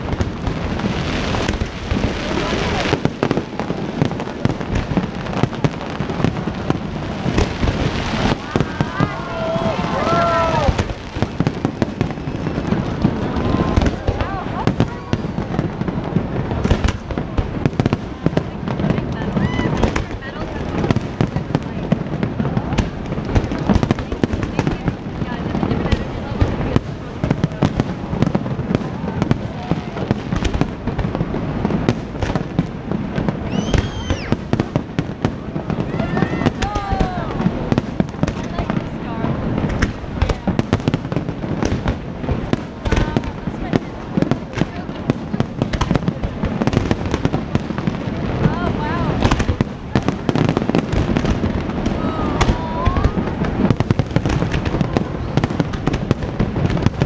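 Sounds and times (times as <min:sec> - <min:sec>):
fireworks bangs and crackling: 0:00.0 - 0:57.0
firework whistles: 0:33.3 - 0:34.5.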